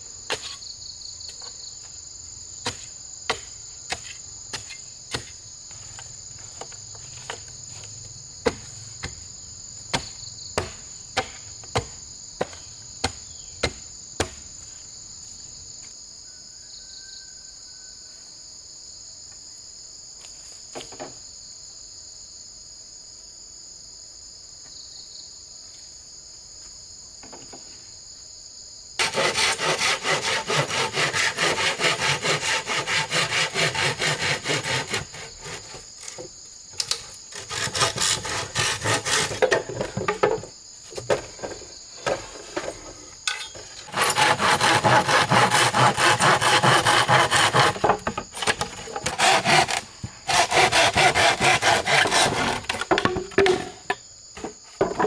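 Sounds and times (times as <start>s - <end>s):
insects droning: 0.0s - 55.0s
hand saw cutting wood: 29.0s - 40.4s, 43.3s - 54.5s.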